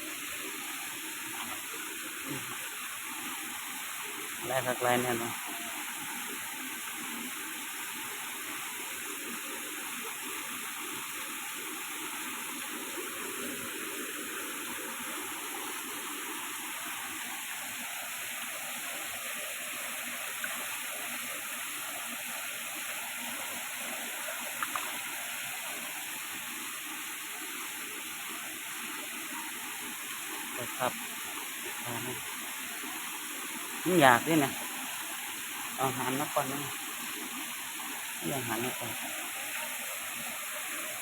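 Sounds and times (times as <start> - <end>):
waterfall rushing: 22.5 - 41.0.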